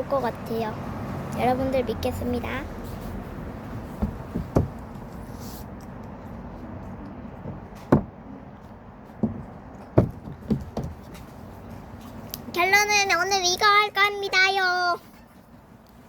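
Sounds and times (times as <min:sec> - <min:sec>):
light knocks and taps: 0:04.0 - 0:05.1, 0:09.2 - 0:11.3.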